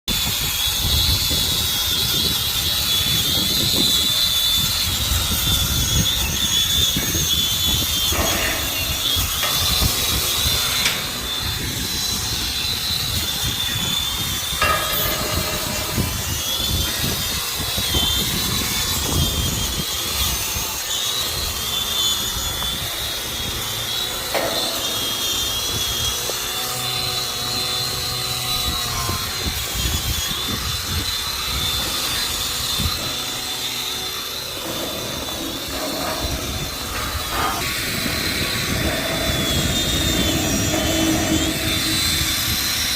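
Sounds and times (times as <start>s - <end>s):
machinery whining and rumbling: 0.1s - 42.9s.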